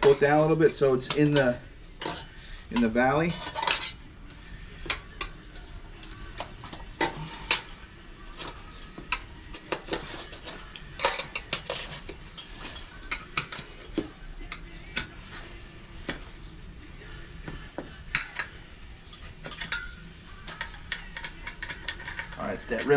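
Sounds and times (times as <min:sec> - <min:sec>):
tire irons clinking on wheel rim: 0:18.1 - 0:22.9.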